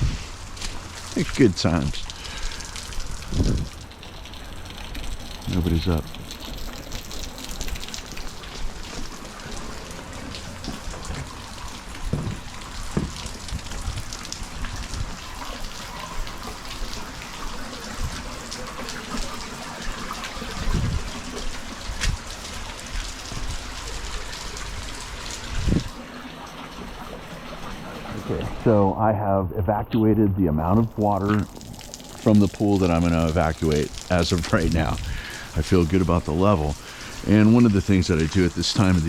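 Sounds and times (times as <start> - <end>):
heavy rain: 0.0 - 39.0
water gushing from a pipe: 0.0 - 39.0
dull thumps: 12.1 - 13.8.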